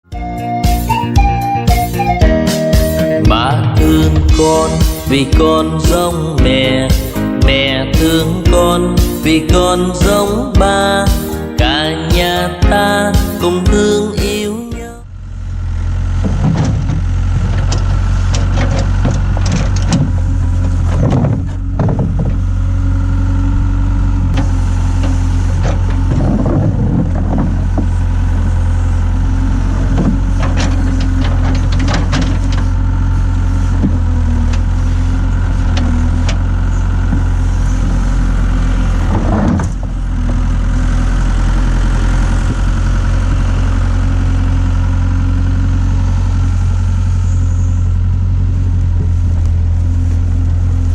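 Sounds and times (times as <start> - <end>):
excavator diesel engine running: 0.0 - 50.9
machine clanking and rattling: 16.0 - 23.5, 24.2 - 45.2.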